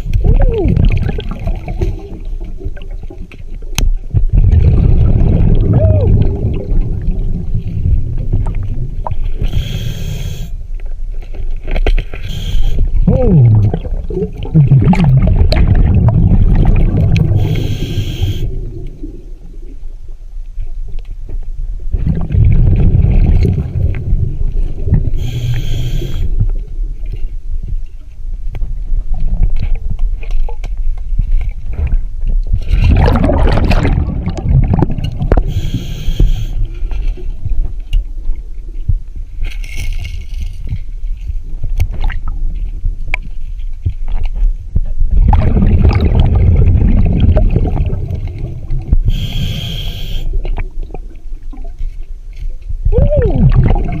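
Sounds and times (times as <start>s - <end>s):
exhaled bubbles rumbling: 0.0s - 11.8s, 12.7s - 39.4s, 40.6s - 54.0s
regulator inhale hiss: 9.4s - 10.6s, 12.2s - 12.8s, 17.4s - 18.5s, 25.2s - 26.4s, 35.4s - 36.8s, 49.1s - 50.4s.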